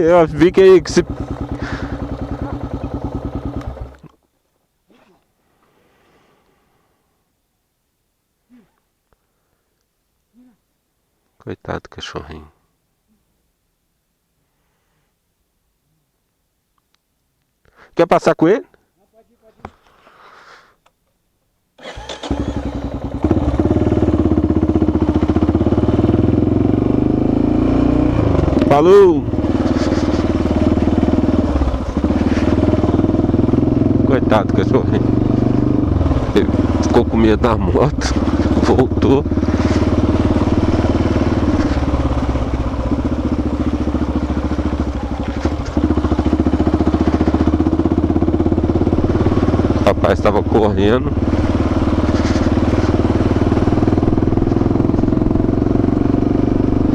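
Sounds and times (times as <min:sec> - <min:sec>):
motorcycle engine starting and idling: 0:00.0 - 0:04.2, 0:21.8 - 0:56.9.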